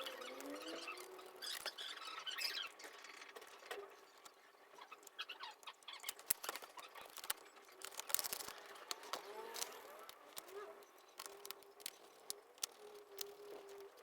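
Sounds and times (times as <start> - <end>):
plastic squeaks: 0.0 - 14.0
plastic laptop parts clicking: 5.9 - 14.0.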